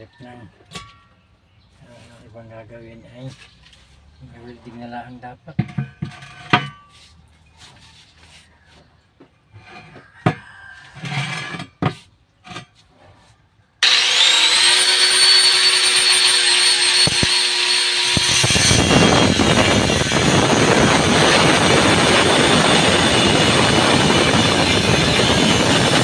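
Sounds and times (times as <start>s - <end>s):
angle grinder whining: 13.8s - 26.0s.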